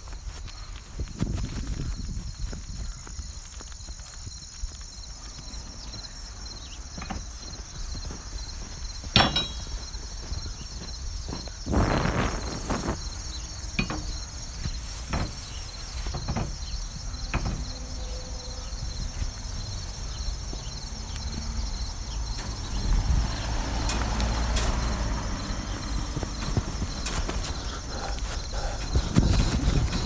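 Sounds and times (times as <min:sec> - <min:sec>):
crickets chirring: 0:00.0 - 0:30.0
sharp knocks: 0:09.1 - 0:09.9
noisy stretch with clicks: 0:23.8 - 0:30.0.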